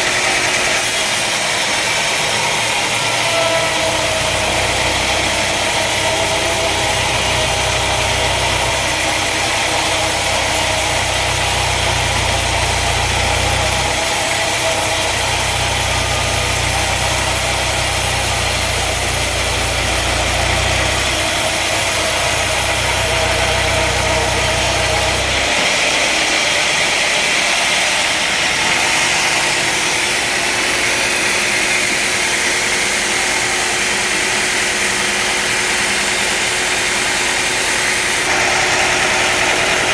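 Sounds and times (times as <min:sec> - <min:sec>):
woodworking machinery running: 0:00.0 - 0:39.9.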